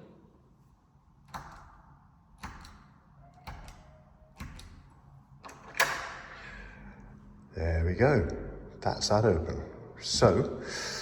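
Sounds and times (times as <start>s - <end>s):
door latch clacking: 2.4s - 6.3s.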